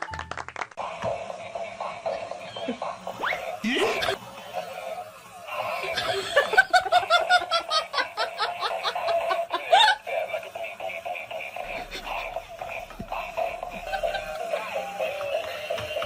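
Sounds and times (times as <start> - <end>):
person laughing in short bursts: 5.7 - 15.0.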